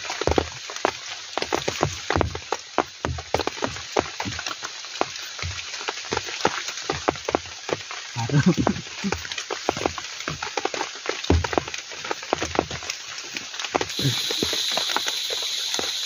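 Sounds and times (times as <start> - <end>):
heavy rain falling: 0.0 - 16.0
short low voice-like sound: 8.2 - 8.8, 14.0 - 14.2.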